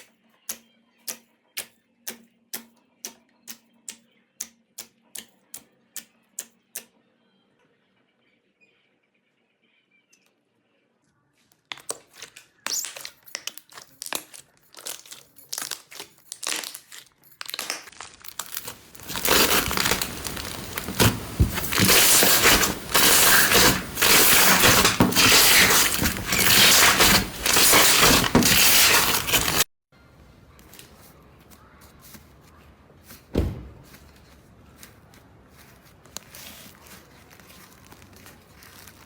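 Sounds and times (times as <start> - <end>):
crunchy slime squeezed by hand: 12.7 - 29.4.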